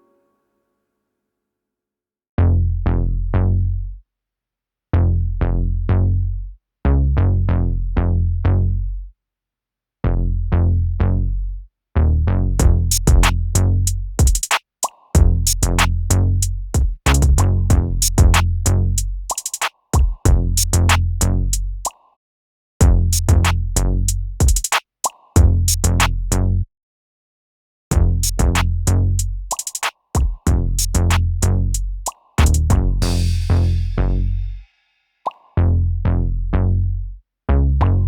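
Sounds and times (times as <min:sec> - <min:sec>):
electronic deep bass music: 0:02.4 - 0:03.9, 0:05.0 - 0:06.4, 0:07.0 - 0:09.0, 0:10.1 - 0:14.2, 0:15.2 - 0:19.3, 0:20.3 - 0:21.8, 0:22.8 - 0:24.4, 0:25.4 - 0:26.6, 0:27.9 - 0:29.5, 0:30.5 - 0:34.5, 0:35.6 - 0:38.0
drum machine hi-hat ticks: 0:12.6 - 0:15.9, 0:16.8 - 0:18.4, 0:19.3 - 0:21.0, 0:22.8 - 0:23.6, 0:24.4 - 0:26.1, 0:27.9 - 0:31.2, 0:32.0 - 0:33.0.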